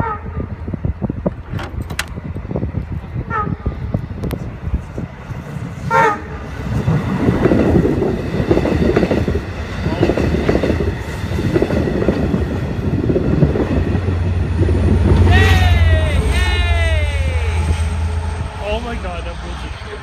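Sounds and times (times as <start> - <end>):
train rumbling past: 0.0 - 20.0
wheels clattering over rails: 1.2 - 2.4.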